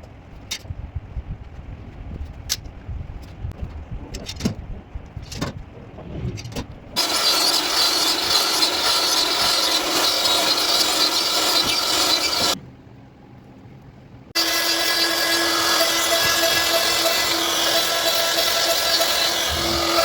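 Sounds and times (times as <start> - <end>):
power tool working wood: 7.0 - 12.6, 14.4 - 20.0.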